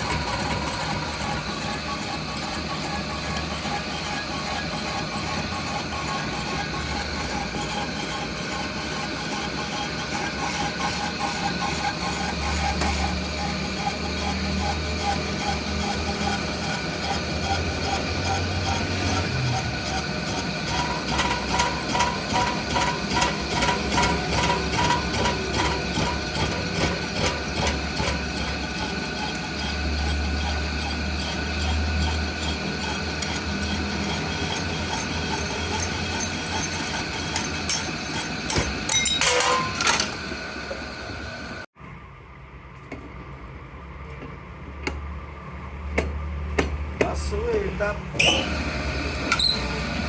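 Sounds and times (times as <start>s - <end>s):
quieter machine noise: 0.0s - 42.4s.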